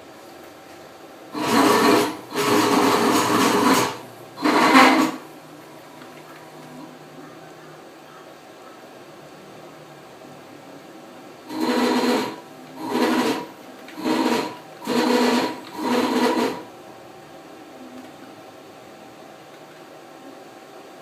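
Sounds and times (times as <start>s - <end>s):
stepper motors whining: 1.3s - 5.3s, 11.5s - 16.7s.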